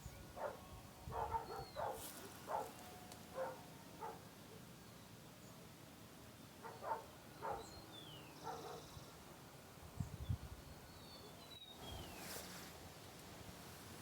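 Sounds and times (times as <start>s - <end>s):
distant dog barking: 0.4s - 4.2s, 6.6s - 7.7s, 8.4s - 8.9s
birds chirping: 1.2s - 4.2s, 6.6s - 9.1s.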